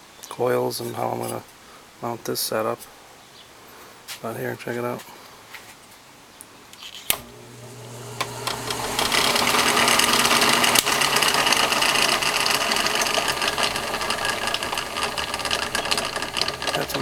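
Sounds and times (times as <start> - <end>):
drill press switch click: 7.1 - 11.1
drill press motor and belt rattling: 7.1 - 17.0.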